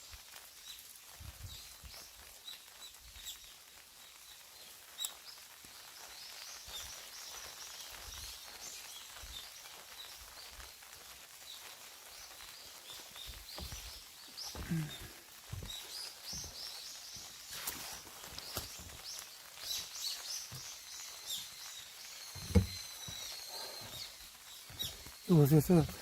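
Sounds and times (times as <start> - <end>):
small birds chirping: 0.0 - 26.0
soft low thumps: 22.4 - 22.8.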